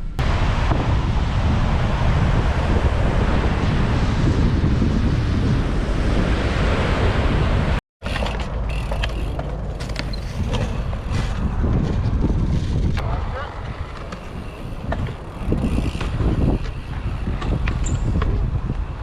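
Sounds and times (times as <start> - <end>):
wind buffeting microphone: 0.0 - 7.8, 8.7 - 19.0
ocean surf: 0.2 - 4.7, 5.4 - 7.8.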